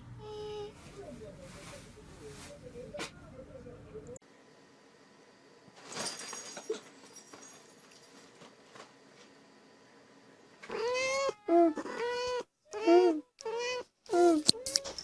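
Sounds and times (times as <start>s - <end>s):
cat meowing: 10.7s - 14.6s.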